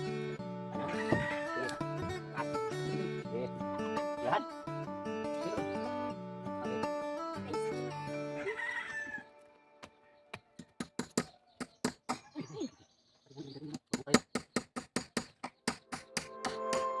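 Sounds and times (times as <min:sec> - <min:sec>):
hammering knocks: 0:10.4 - 0:12.3, 0:13.8 - 0:17.0.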